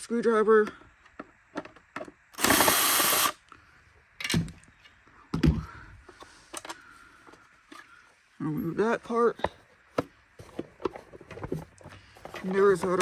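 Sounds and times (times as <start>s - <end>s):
screwdriver ratcheting: 2.4s - 3.4s.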